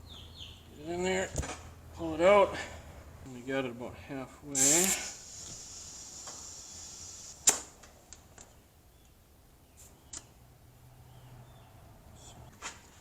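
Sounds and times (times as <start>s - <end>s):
faint hiss: 4.5s - 7.8s.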